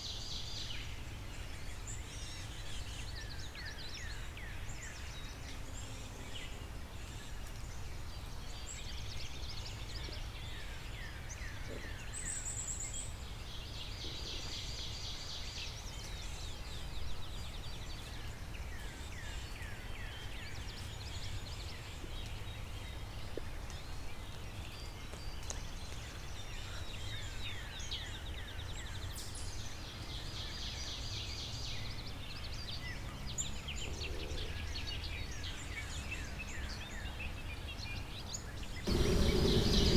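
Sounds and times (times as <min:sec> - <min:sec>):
low background rumble: 0:38.9 - 0:39.9
songbirds singing: 0:38.9 - 0:39.9.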